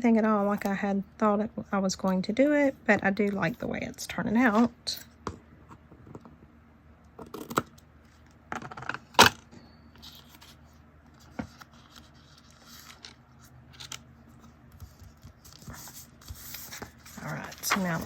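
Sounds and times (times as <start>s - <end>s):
paper rustling: 11.2s - 18.0s.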